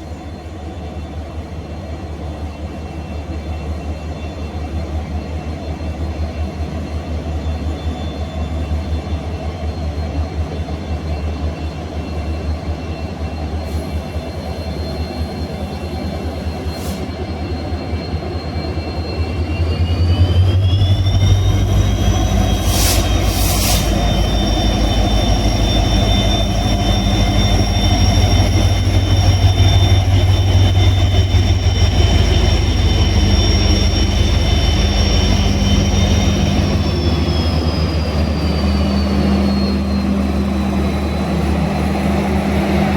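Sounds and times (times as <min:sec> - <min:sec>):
high whine rising in pitch: 0:19.1 - 0:42.9
locomotive low rumble: 0:19.5 - 0:42.9
hiss-like bursts: 0:22.6 - 0:24.1.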